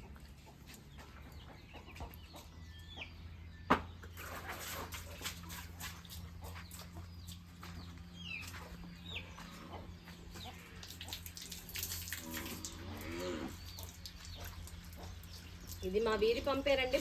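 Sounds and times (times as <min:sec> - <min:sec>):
hose water splashing on car: 0:10.8 - 0:12.8.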